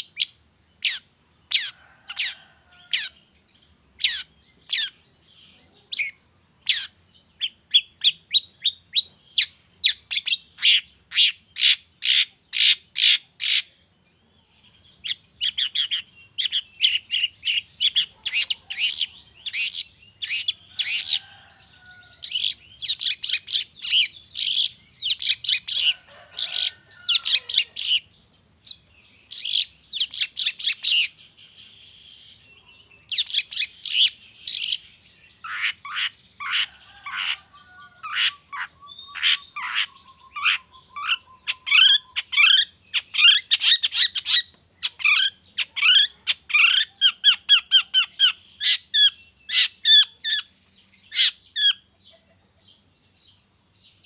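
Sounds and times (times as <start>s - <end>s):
shrike chattering calls: 15.4s - 31.2s, 33.0s - 50.4s.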